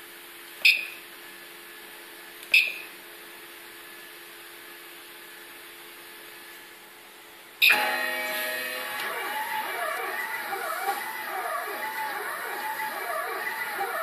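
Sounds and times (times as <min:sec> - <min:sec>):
machine hum with low tones: 0:07.6 - 0:14.0.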